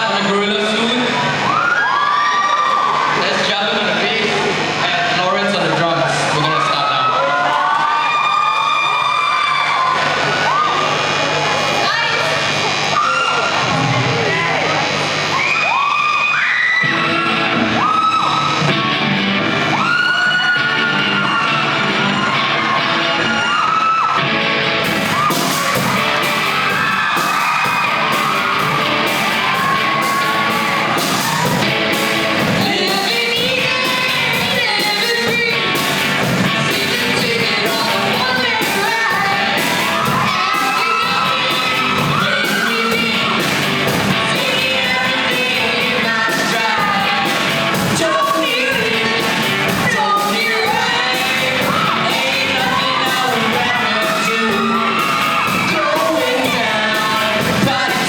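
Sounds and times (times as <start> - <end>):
audience yelling and whooping: 0.0 - 58.0
drums: 0.0 - 58.0
live band playing: 16.8 - 58.0
lead singer singing: 25.2 - 58.0.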